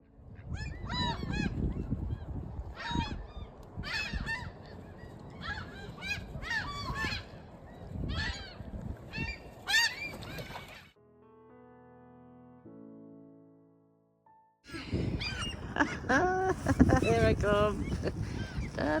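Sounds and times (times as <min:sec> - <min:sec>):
gulls squawking: 0:00.2 - 0:02.0, 0:02.6 - 0:11.0, 0:14.7 - 0:19.0.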